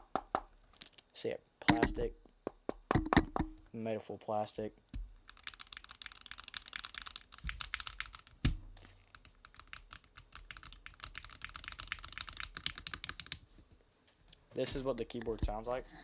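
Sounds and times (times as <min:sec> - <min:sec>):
keyboard keys clicking: 0:05.3 - 0:08.4, 0:09.1 - 0:13.4.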